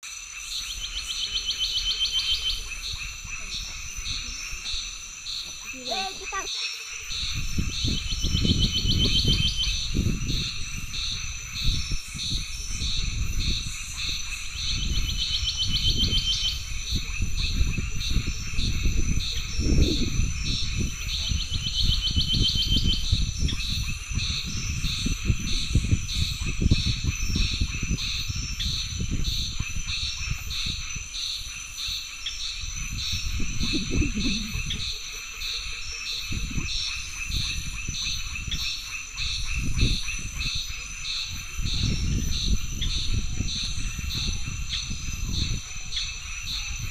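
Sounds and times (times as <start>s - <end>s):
insects buzzing and chirping: 0.0s - 46.9s
low rumbling noise: 32.6s - 35.2s.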